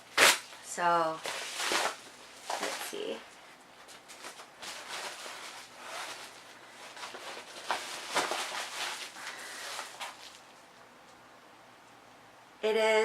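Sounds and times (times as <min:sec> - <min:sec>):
packaging rustling and ripping: 0:00.0 - 0:03.2, 0:03.8 - 0:10.6.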